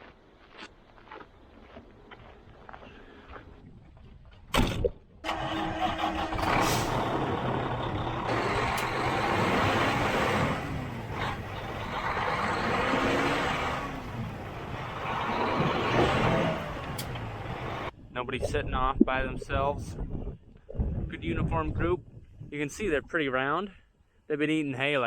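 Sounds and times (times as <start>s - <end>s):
truck diesel engine running: 5.2s - 17.9s.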